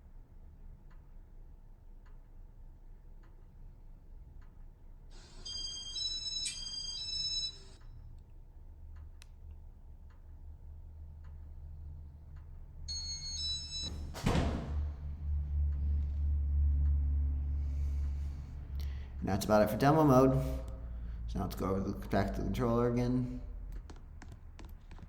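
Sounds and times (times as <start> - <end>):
fan motor humming: 8.0 - 24.9.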